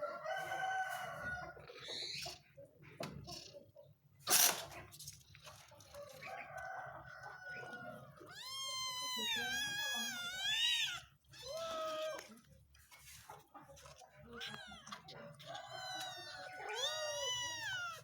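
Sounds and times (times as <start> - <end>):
cat meowing: 8.2 - 12.3, 14.3 - 18.0.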